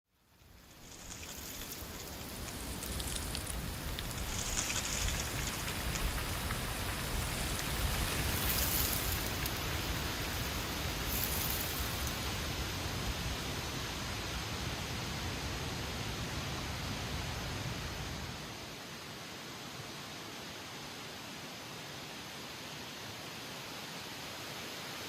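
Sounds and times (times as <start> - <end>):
wind blowing in gusts: 0.5 - 18.6
wind rumble on microphone: 0.7 - 18.6.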